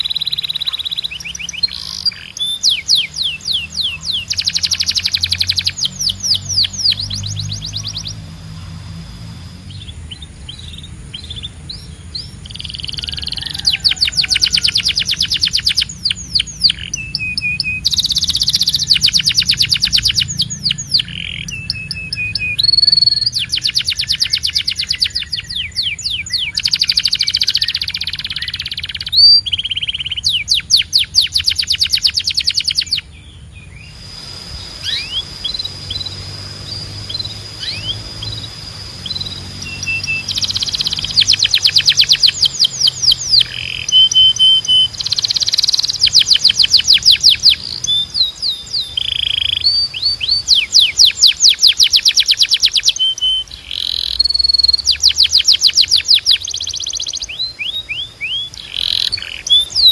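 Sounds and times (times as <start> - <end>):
canary singing: 0.0 - 59.9.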